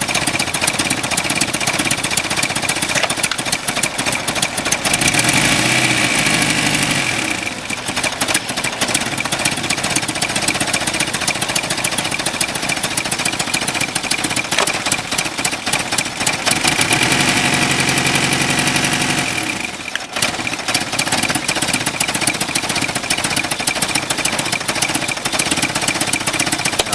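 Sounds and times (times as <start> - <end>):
car engine metallic knocking: 0.0 - 5.8, 7.7 - 19.0, 19.7 - 26.9
car engine revving: 1.9 - 11.3, 13.3 - 21.0.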